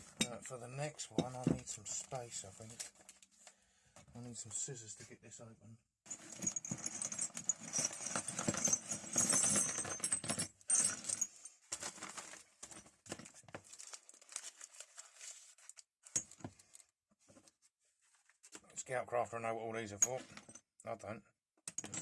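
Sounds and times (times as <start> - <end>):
small metal tools clinking: 6.1 - 11.5, 21.7 - 22.0
packaging being cut and rustled: 13.1 - 15.8.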